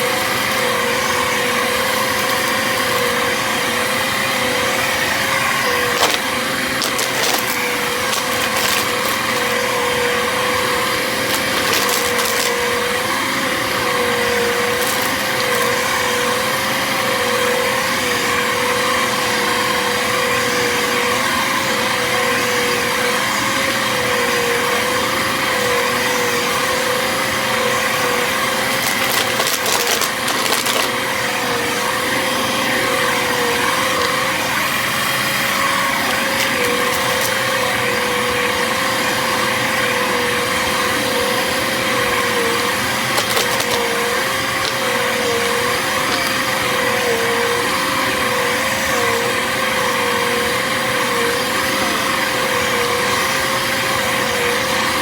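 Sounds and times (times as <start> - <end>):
vacuum cleaner motor whine: 0.0 - 55.0
confetti crackling in vacuum: 5.8 - 9.6, 11.2 - 12.6, 14.7 - 15.8, 28.7 - 31.0, 43.1 - 43.9.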